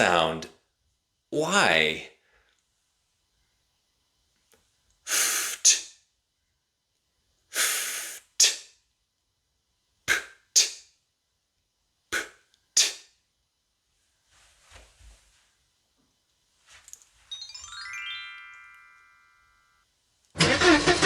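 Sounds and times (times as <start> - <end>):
person making voiceless hisses: 5.1 - 6.0, 7.5 - 8.8, 10.1 - 10.9, 12.1 - 13.1
short breath puffs: 5.1 - 6.0, 7.5 - 8.7, 10.1 - 10.8, 12.1 - 13.1.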